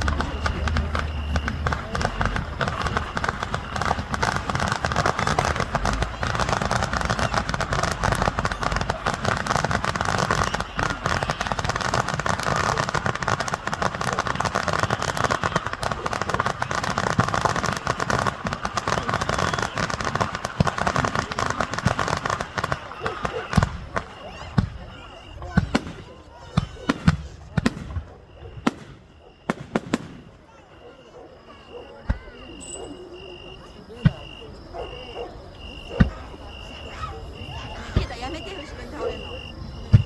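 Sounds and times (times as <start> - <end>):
fireworks crackling: 0.0 - 30.7
voices: 0.0 - 40.0.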